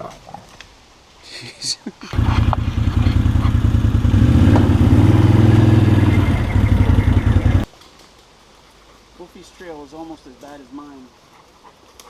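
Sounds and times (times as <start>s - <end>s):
atv engine running: 2.2s - 7.7s.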